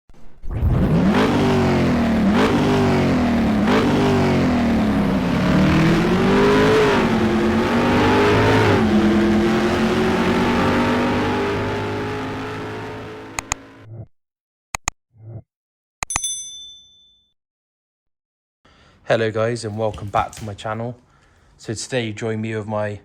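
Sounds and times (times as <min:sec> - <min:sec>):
car engine revving: 0:00.5 - 0:13.8.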